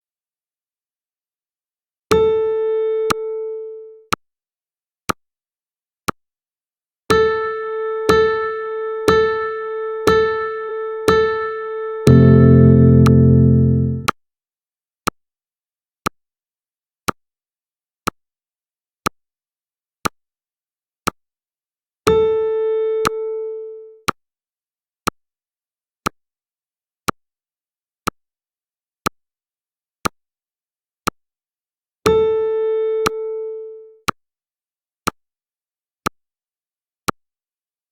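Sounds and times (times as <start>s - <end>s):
electronic countdown music: 7.1s - 14.1s
bell-like synth tone: 12.1s - 14.1s.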